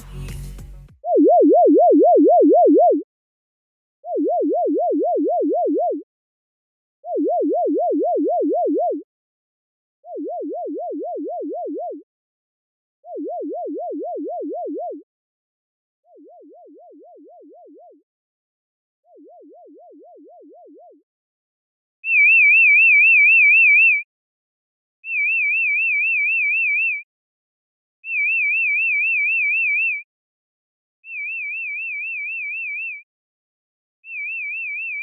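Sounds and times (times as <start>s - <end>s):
electronic warble tone: 1.0s - 3.0s.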